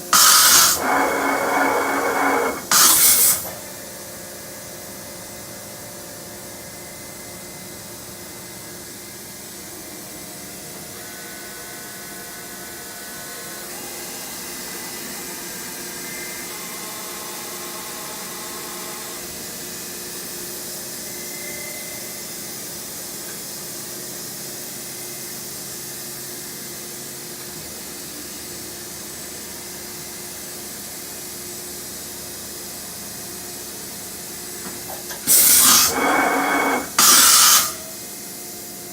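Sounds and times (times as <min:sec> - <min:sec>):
faint machine whining: 0:00.0 - 0:03.9, 0:34.6 - 0:38.0
machine steady hiss: 0:00.0 - 0:05.0, 0:28.8 - 0:38.9.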